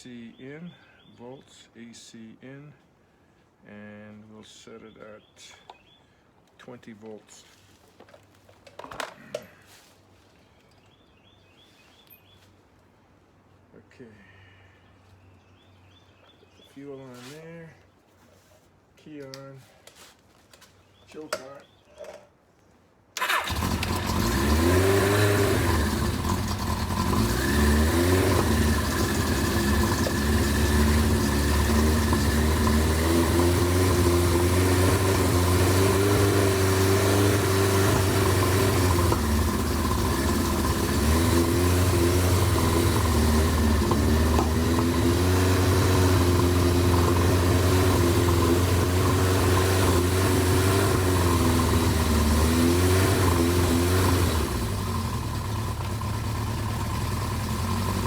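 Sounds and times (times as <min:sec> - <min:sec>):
motorcycle engine starting and idling: 0:23.2 - 0:58.0.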